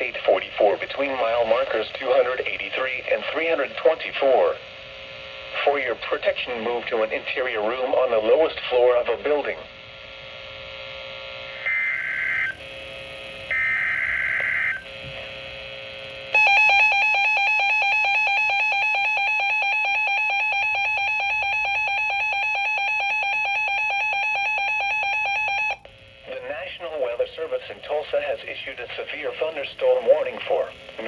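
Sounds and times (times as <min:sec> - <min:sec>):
buzzy electronic data bursts: 0:09.8 - 0:19.4
shrill two-tone alert signal: 0:11.6 - 0:12.6, 0:13.5 - 0:14.9, 0:16.4 - 0:25.8.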